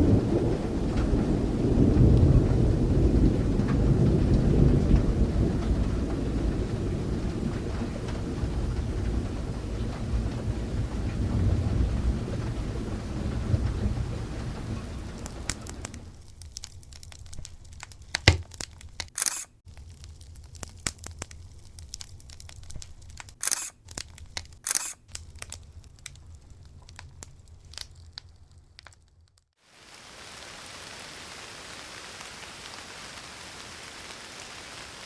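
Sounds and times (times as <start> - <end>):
low rumble of thunder: 0.0 - 16.2
sharp crackles and clicks: 13.4 - 35.0.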